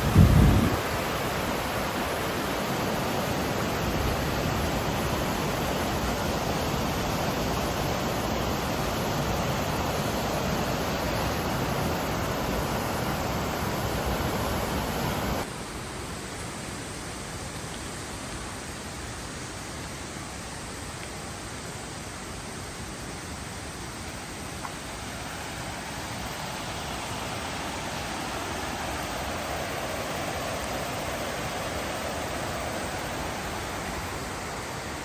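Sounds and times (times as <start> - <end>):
river rushing over rocks: 0.0 - 15.5, 23.4 - 35.0.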